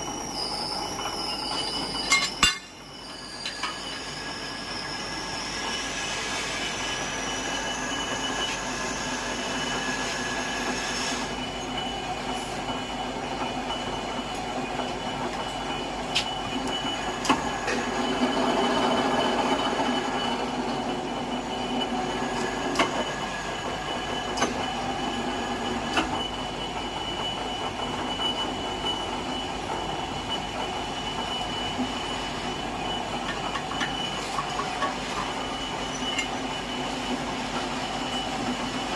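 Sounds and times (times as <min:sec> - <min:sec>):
tapping machine whine: 0:00.0 - 0:38.9.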